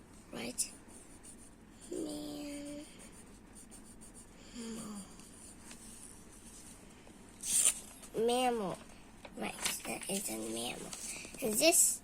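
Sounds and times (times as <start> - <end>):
pencil writing on paper: 0.4 - 4.4, 5.1 - 5.8
child humming: 1.9 - 3.0, 4.5 - 5.2.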